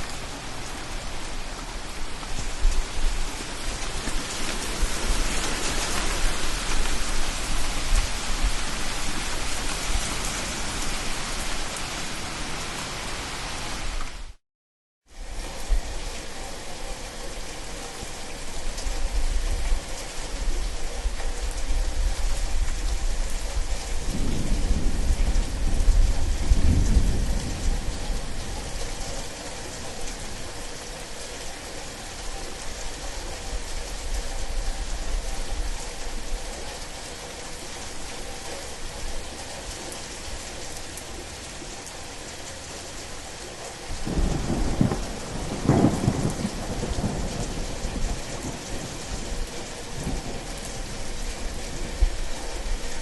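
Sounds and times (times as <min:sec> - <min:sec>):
rain hissing: 0:00.0 - 0:14.4, 0:15.1 - 0:53.0
low thunder rumble: 0:21.6 - 0:29.4, 0:44.0 - 0:53.0.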